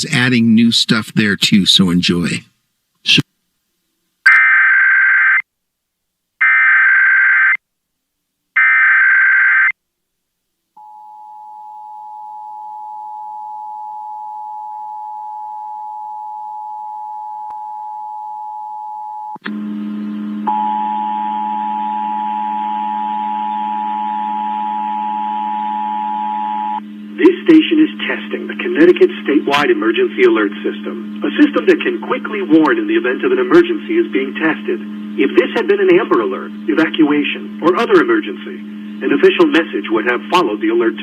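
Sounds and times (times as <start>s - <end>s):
low buzz: 10.8s - 27.3s
two-tone attention signal: 20.5s - 26.8s.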